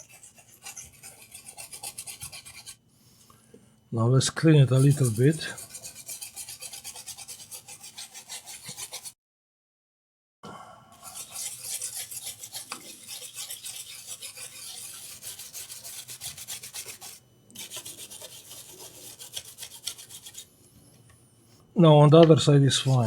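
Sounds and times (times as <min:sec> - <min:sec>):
brush scrubbing with scratchy rasping: 0:00.0 - 0:02.8, 0:04.6 - 0:09.2, 0:11.0 - 0:20.5, 0:22.4 - 0:23.0.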